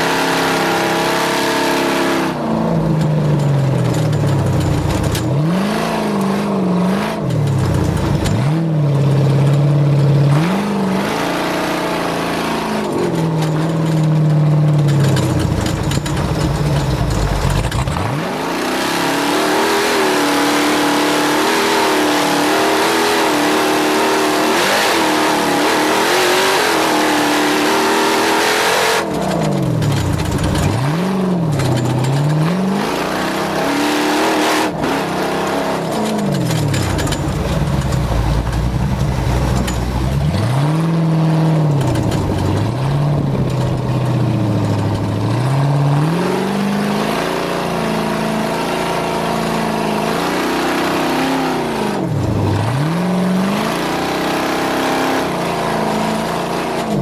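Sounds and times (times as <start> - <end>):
vehicle engine revving: 0.0 - 57.0.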